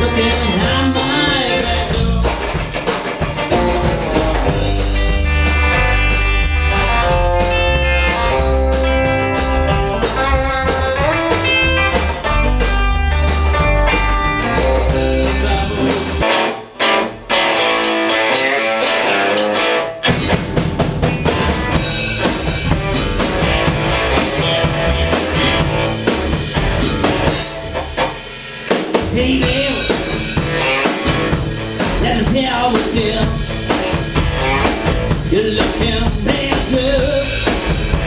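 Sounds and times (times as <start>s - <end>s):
lead guitar with bending notes: 0.0s - 28.4s, 29.0s - 38.0s
bass and drums: 0.0s - 38.0s.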